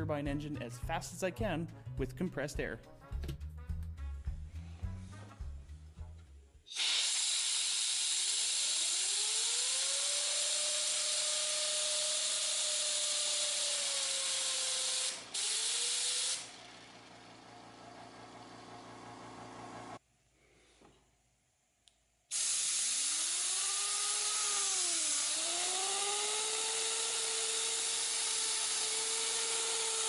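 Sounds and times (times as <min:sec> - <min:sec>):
compressed air hissing: 0:06.7 - 0:16.6, 0:22.3 - 0:30.0
rotor whine: 0:07.1 - 0:20.0, 0:22.6 - 0:30.0.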